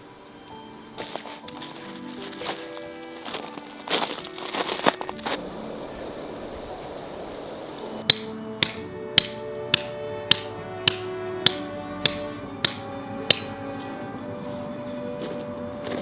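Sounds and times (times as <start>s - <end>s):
hammer striking metal tent peg: 8.1s - 13.7s.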